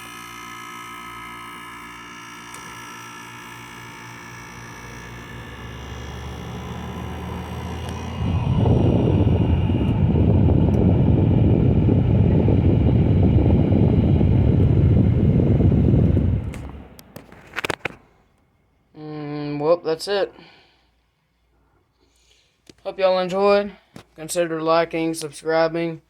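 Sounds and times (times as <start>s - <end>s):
air conditioner hum: 0.0s - 26.0s
low rush of blowing air: 5.2s - 17.2s.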